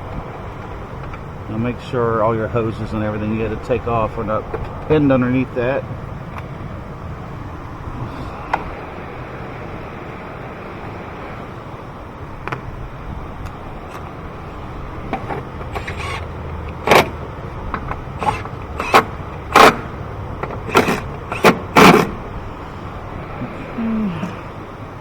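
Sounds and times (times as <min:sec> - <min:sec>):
engine parts knocking and clattering: 0:00.0 - 0:01.5, 0:02.4 - 0:06.8, 0:13.4 - 0:22.6
steady background noise: 0:00.0 - 0:25.0.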